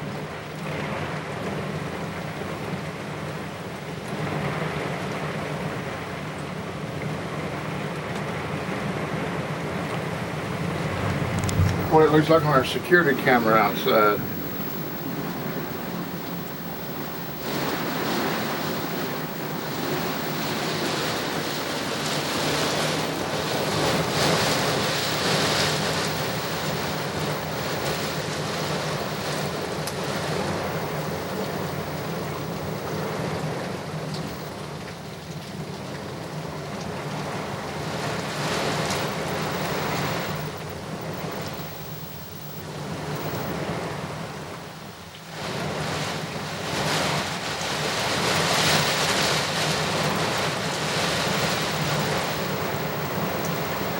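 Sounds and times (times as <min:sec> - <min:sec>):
heavy rain: 0:00.0 - 0:53.9
wind gusts: 0:09.5 - 0:34.6, 0:37.4 - 0:44.2, 0:45.3 - 0:53.9.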